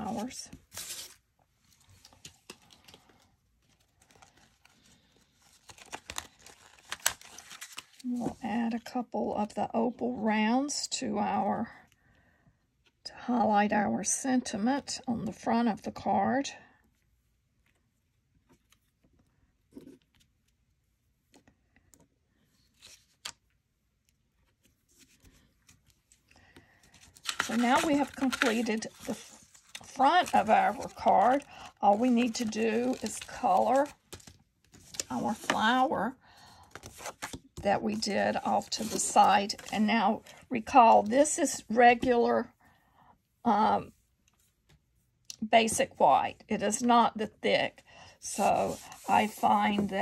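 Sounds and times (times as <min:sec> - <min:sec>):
paper rustling: 0:00.0 - 0:08.4, 0:24.4 - 0:35.9, 0:36.7 - 0:41.2, 0:48.3 - 0:50.0.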